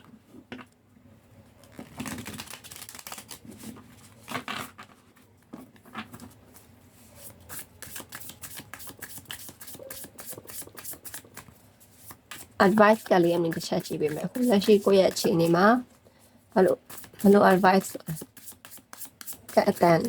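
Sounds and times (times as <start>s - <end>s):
cards being shuffled: 1.6s - 5.0s, 7.5s - 15.6s.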